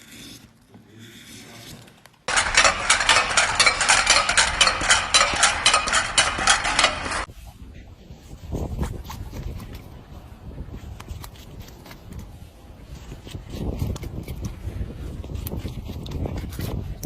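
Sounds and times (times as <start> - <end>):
rapid mechanical clicking: 2.3 - 7.3.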